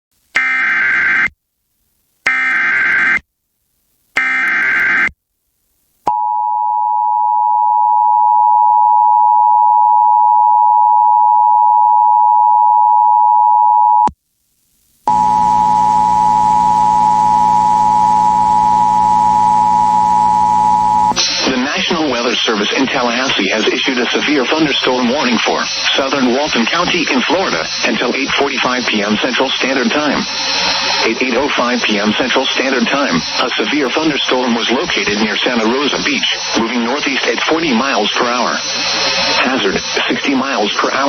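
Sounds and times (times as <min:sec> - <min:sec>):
two-tone attention signal: 0:15.1 - 0:21.2
screeching data bursts: 0:15.1 - 0:21.4.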